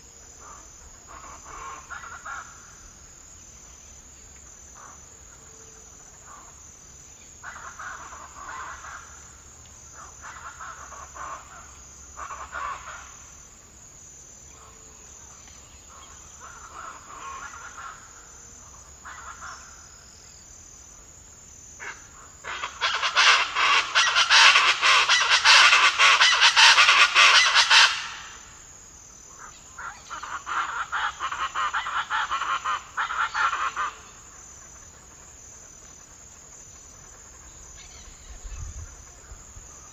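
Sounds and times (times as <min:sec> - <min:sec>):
high insect trill: 0:00.0 - 0:39.9
wild birds calling: 0:21.8 - 0:28.6.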